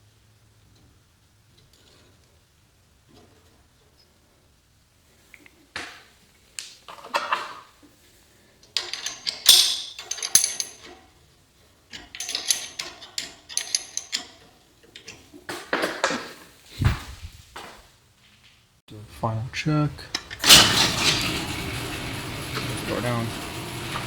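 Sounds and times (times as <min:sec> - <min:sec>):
metal tools clinking and scraping: 0:08.6 - 0:11.2, 0:11.9 - 0:16.2
ringing metallic clanks: 0:08.8 - 0:11.0, 0:12.0 - 0:14.4.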